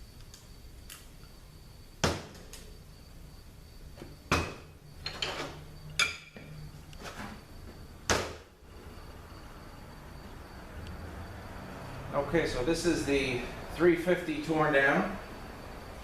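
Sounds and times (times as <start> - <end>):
metal parts clanking on hard surface: 5.0 - 6.4.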